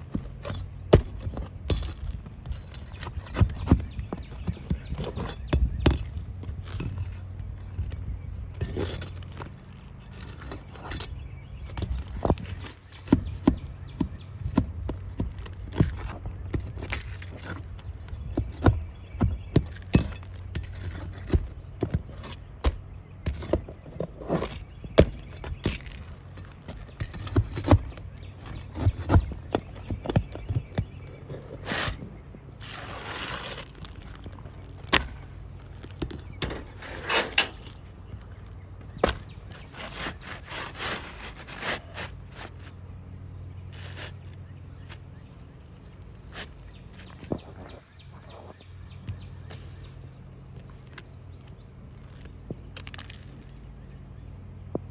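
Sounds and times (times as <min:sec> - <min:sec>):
scraping or rustling: 0:31.1 - 0:42.9, 0:43.7 - 0:44.4.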